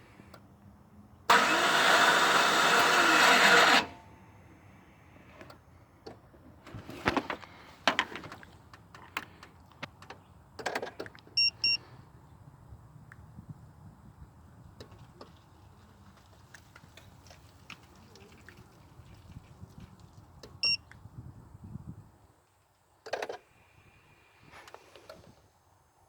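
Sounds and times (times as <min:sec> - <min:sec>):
starter motor whirring: 0:01.3 - 0:04.2
short beeps: 0:11.4 - 0:11.8, 0:20.6 - 0:20.8.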